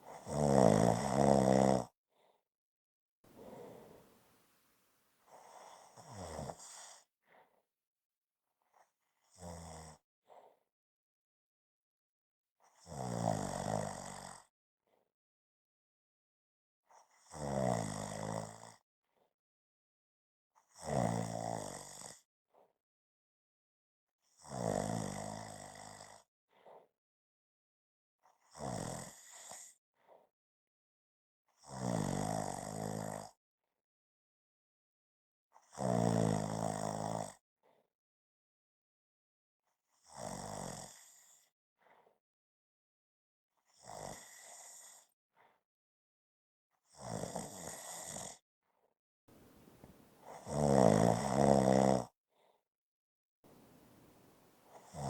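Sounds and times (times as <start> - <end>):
person snoring: 0.1 - 1.8, 3.3 - 4.2, 49.4 - 52.0, 53.5 - 55.0
soft breath out: 3.3 - 4.6, 49.3 - 50.4, 53.5 - 55.0.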